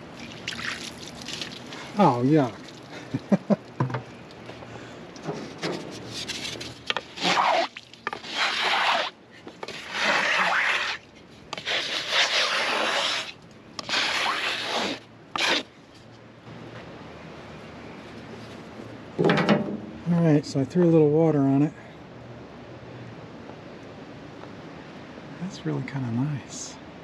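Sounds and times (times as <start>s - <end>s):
scraping strokes on wet wood: 5.2s - 16.1s.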